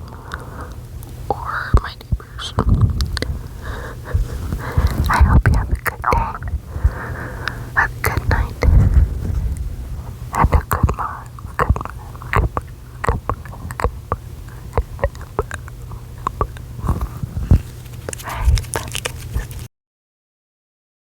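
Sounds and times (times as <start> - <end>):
breathy whispers: 0.0 - 19.7
low steady hum: 0.0 - 19.7
wet mouth clicks: 0.1 - 3.4, 4.5 - 6.6, 7.4 - 8.8, 10.3 - 19.7.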